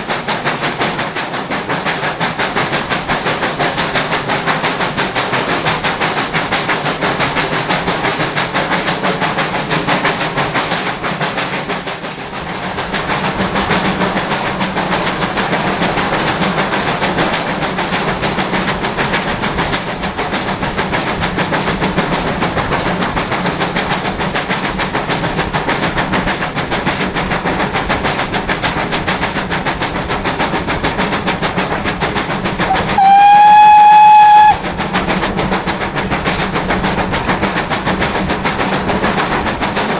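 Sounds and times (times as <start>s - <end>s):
steam locomotive exhaust beat: 0.0s - 39.9s
wheels on rails: 0.0s - 39.9s
steam locomotive whistle: 32.7s - 34.6s.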